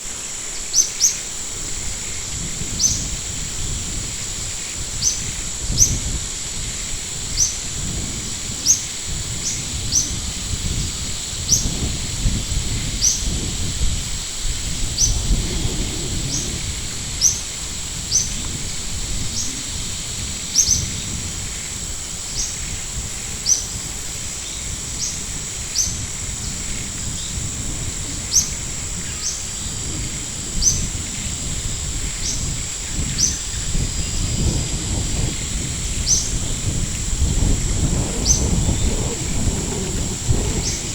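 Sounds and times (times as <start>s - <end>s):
low rumble: 14.8s - 20.5s.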